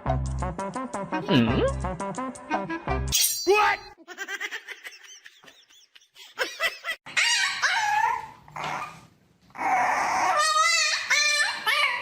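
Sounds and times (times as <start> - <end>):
pet animal crying: 9.6 - 12.0.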